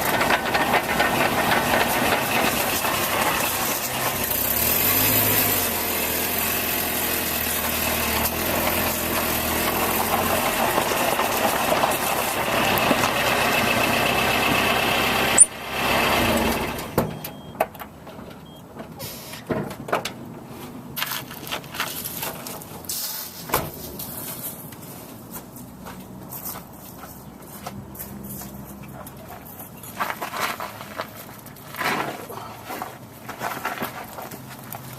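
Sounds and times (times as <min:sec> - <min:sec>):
scattered clicks and knocks: 0:00.0 - 0:04.2
pickup truck engine running: 0:00.0 - 0:18.0.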